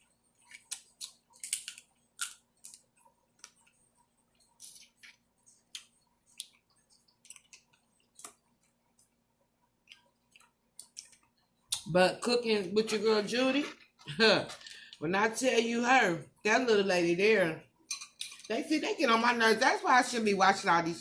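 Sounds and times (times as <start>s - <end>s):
chewing food: 0.3s - 11.9s
shells cracking and clicking: 0.7s - 3.6s.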